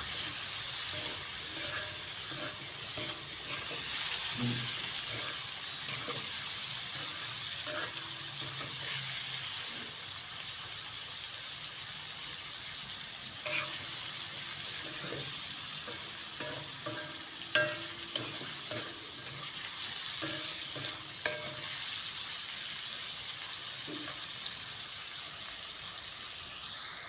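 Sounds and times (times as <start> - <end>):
stir-fry sizzling in a pan: 0.0 - 27.0.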